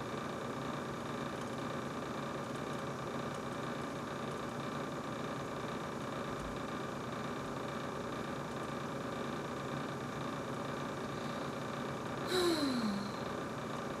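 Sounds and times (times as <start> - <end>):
refrigerator humming: 12.3 - 13.2.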